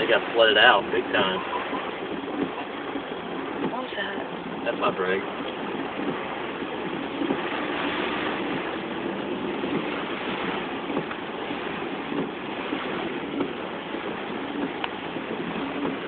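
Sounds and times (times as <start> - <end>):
faint car engine: 0.0 - 16.0
tyres spraying floodwater: 0.0 - 16.0.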